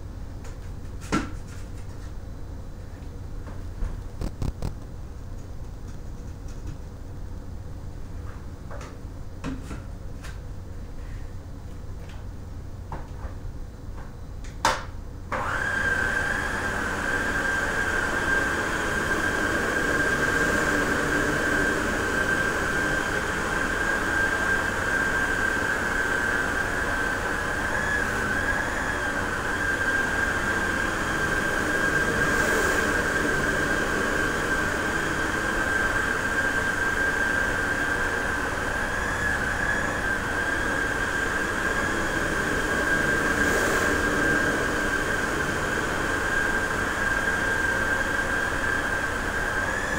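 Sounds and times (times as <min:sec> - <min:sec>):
vacuum cleaner motor whining: 0:15.3 - 0:49.9.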